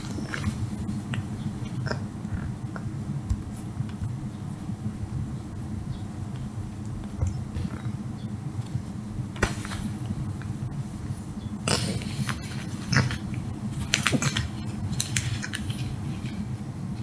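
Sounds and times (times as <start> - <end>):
steady low hum: 0.0 - 17.0
cat rustling and scuffling: 8.7 - 10.2.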